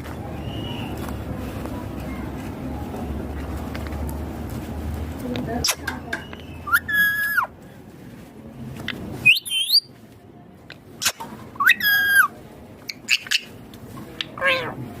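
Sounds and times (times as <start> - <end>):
parakeet calling: 6.4 - 7.5, 14.2 - 14.8.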